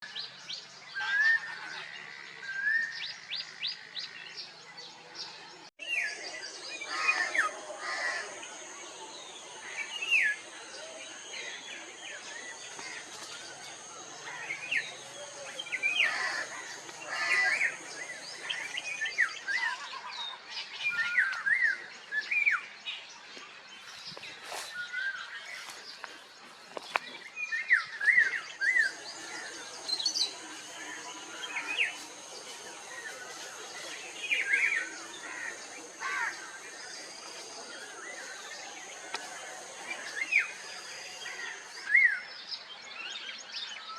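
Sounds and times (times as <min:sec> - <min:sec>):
songbirds chirping and whistling: 0:00.0 - 0:43.9
high thin whine: 0:07.1 - 0:19.6, 0:28.6 - 0:42.1.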